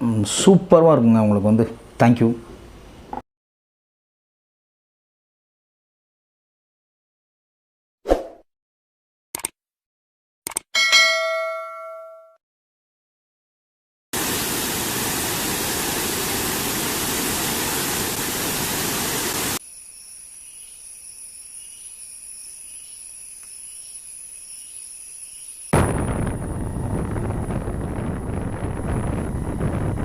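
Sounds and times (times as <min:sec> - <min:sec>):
clicks: 0:10.5 - 0:10.7
bell-like ding: 0:10.8 - 0:12.4
loud static-like hiss: 0:14.2 - 0:19.6.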